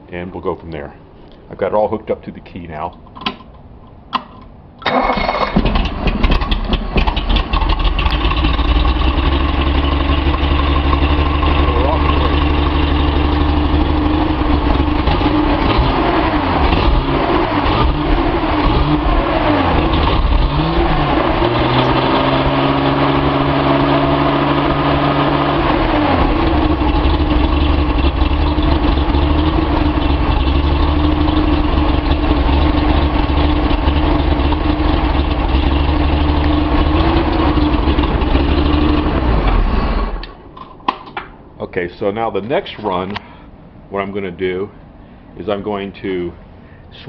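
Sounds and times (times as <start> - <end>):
car engine running: 5.0 - 40.3.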